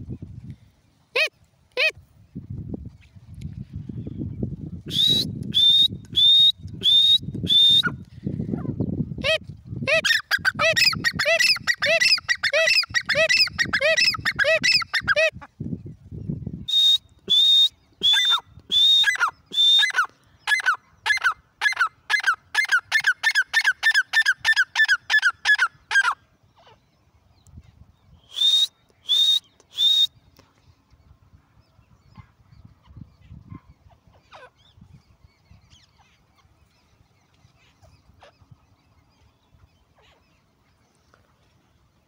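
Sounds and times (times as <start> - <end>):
francolin calling: 9.9 - 15.4.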